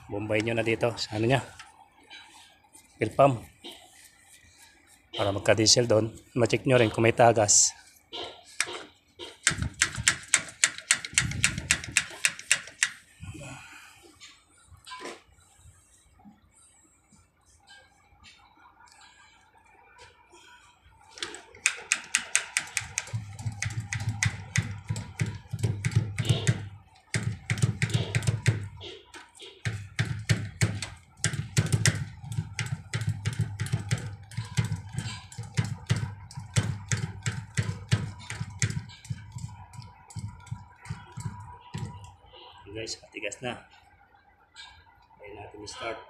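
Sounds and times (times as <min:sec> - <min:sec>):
hand primer pump clicking: 0:09.5 - 0:13.0, 0:21.2 - 0:24.1.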